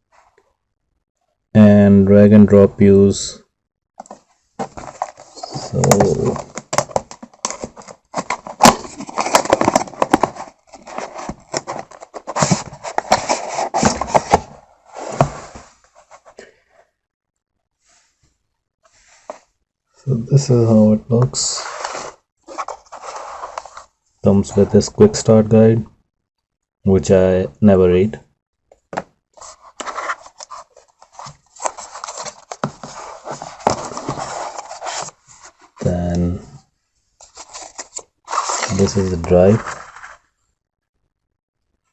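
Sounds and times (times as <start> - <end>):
packaging rustling and clicking: 4.0 - 14.5, 29.4 - 35.6.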